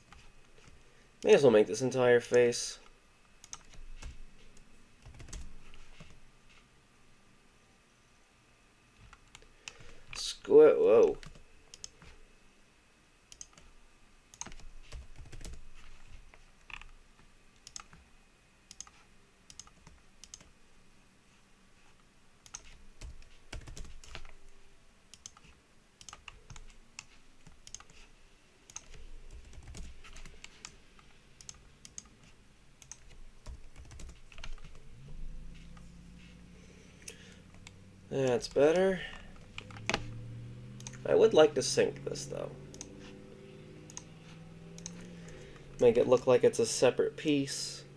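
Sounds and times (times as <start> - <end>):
computer keyboard keys tapping: 3.4 - 6.2, 11.1 - 12.1, 14.4 - 17.0, 17.6 - 18.0, 18.7 - 20.5, 22.4 - 24.4, 25.1 - 28.0, 28.7 - 30.8, 32.8 - 34.8, 39.4 - 40.1
mouse clicks: 22.4 - 23.3, 42.7 - 43.0, 43.9 - 45.4.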